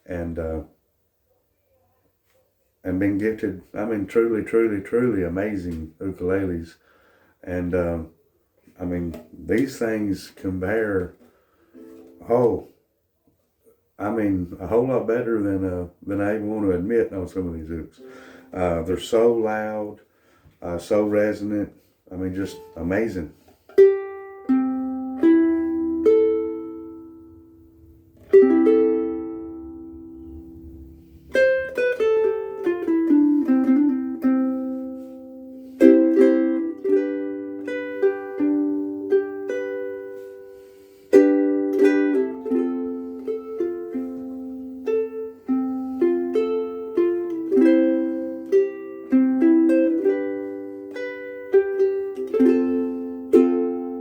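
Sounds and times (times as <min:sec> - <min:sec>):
ukulele plucked chords: 0:22.4 - 0:54.0.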